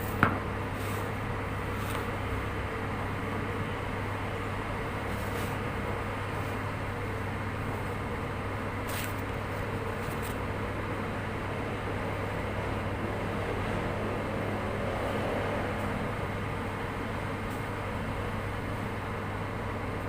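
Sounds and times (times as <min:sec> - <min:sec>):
mechanical hum with hiss: 0:00.0 - 0:20.0.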